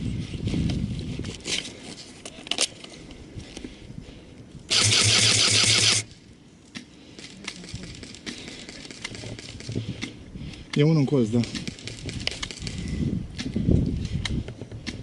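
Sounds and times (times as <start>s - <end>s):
clicks and scuffs of gear: 0.3s - 3.8s, 6.6s - 15.0s
airsoft rifle full-auto burst: 4.7s - 6.1s.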